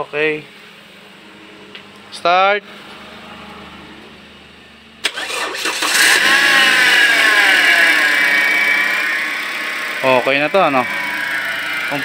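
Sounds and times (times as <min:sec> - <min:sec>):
car engine idling: 0:00.0 - 0:12.0
engine cranking: 0:05.0 - 0:12.0.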